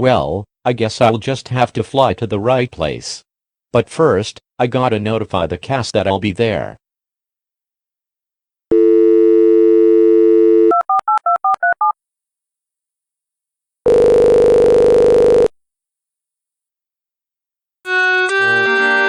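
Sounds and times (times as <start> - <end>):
telephone dial tone: 8.7 - 11.9, 13.9 - 15.5
buzzy phone ringing tone: 13.9 - 15.5.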